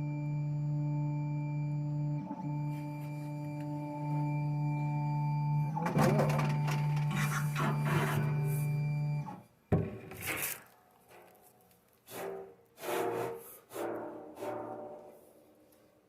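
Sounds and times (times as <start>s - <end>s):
printer motor humming: 0.0s - 9.3s
scraping and rubbing: 6.5s - 8.5s, 9.9s - 15.3s.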